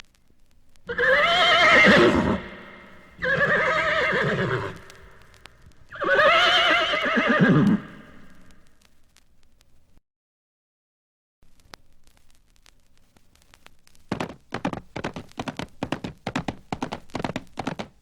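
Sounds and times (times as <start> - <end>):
horse whinnying: 0.9 - 5.0, 5.9 - 8.4.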